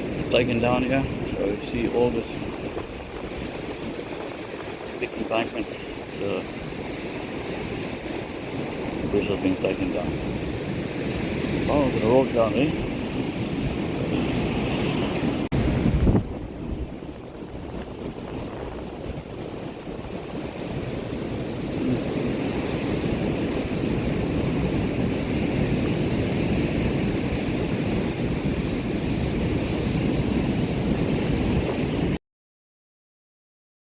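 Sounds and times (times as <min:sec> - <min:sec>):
surf breaking on shore: 0:00.0 - 0:32.2
wind rumbling on microphone: 0:00.0 - 0:32.2.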